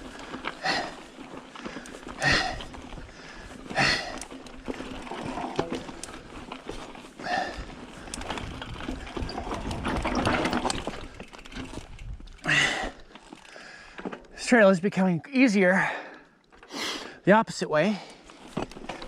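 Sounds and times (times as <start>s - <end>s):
heavy breathing: 0.0s - 6.2s, 7.2s - 8.5s, 12.4s - 14.2s
mountain bike rattling over dirt: 0.0s - 14.7s, 18.0s - 19.0s.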